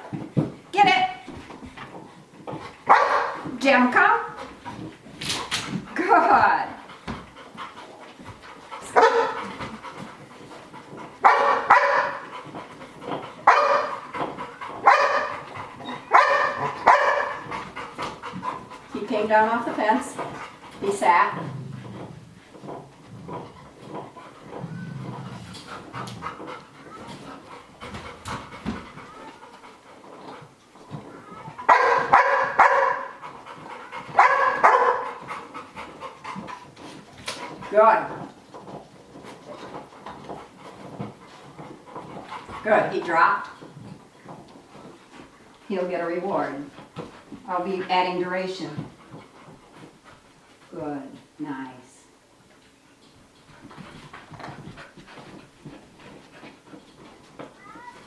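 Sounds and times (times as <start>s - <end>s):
dog barking: 2.9s - 3.4s, 9.0s - 9.4s, 11.2s - 12.3s, 13.4s - 14.0s, 14.8s - 17.4s, 31.7s - 33.2s, 34.2s - 35.2s.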